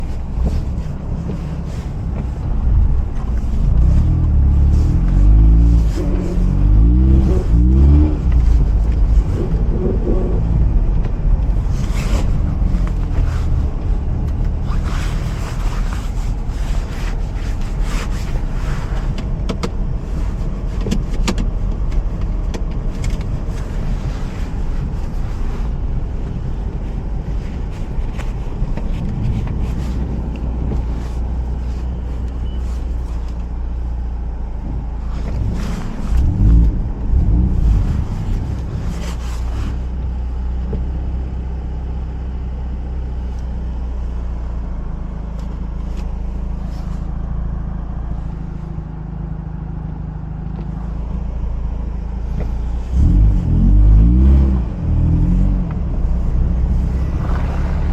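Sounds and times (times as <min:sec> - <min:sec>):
tyre noise on snowy road: 0:00.0 - 0:57.9
rotary engine accelerating: 0:02.2 - 0:16.1, 0:50.8 - 0:57.9.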